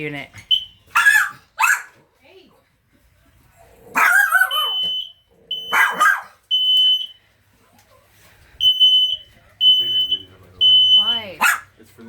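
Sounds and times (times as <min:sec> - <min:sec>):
smoke detector beeping: 0:00.5 - 0:00.9, 0:04.5 - 0:07.4, 0:08.6 - 0:11.4
dog barking: 0:00.9 - 0:02.0, 0:03.9 - 0:04.8, 0:05.7 - 0:06.4, 0:11.4 - 0:11.7.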